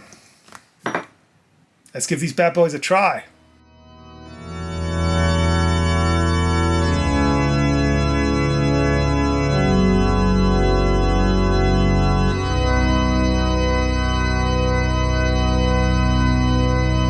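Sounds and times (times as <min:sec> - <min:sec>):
organ sustained chords: 0:03.4 - 0:17.0.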